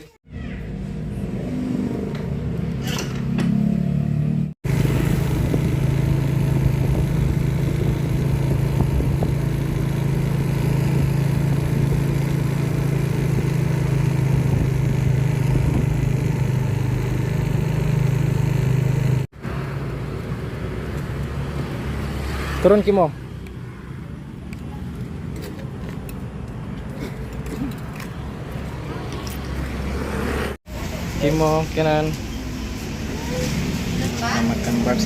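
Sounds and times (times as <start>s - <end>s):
road and wind noise: 0.6s - 35.0s
vehicle engine running: 4.6s - 21.3s.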